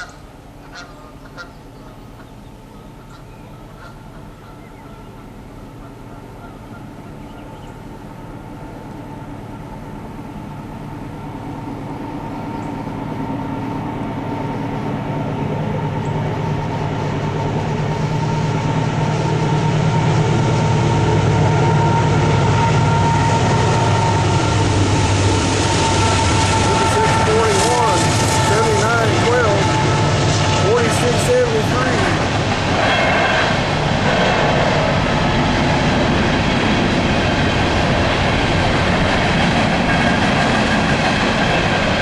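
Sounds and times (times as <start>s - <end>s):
diesel locomotives approaching: 0.0s - 42.0s.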